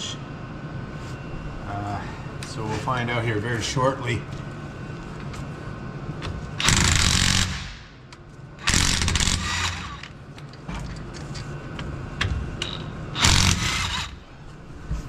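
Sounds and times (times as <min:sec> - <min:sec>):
impact wrench spinning: 0:06.6 - 0:07.8, 0:08.6 - 0:10.1, 0:12.6 - 0:14.2.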